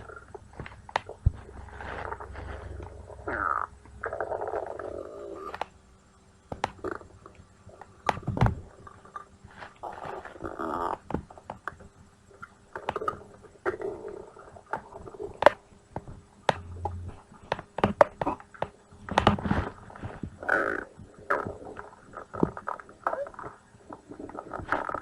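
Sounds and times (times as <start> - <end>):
stomach growling: 0.0 - 5.8, 6.6 - 11.7, 12.3 - 25.0.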